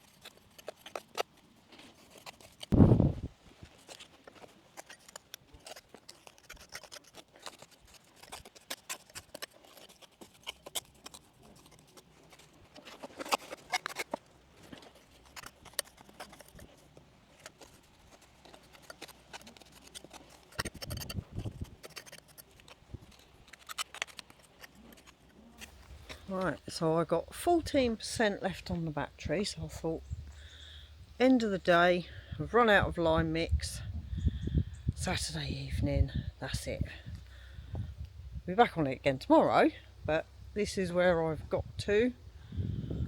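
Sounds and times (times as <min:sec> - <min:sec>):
hand tools scraping mortar: 0:00.0 - 0:02.8, 0:03.6 - 0:28.1.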